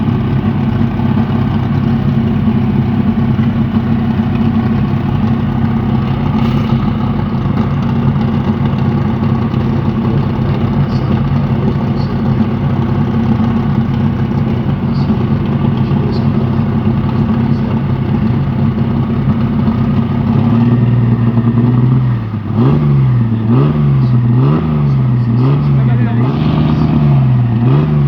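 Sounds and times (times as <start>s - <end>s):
racing engine idling: 0.0s - 28.0s.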